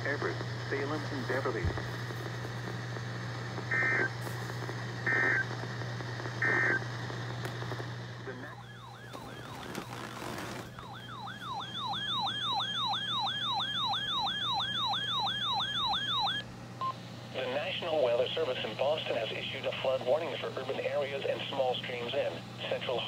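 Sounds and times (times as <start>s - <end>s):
steady low hum: 0.0s - 23.0s
digital data tone bursts: 6.4s - 6.8s.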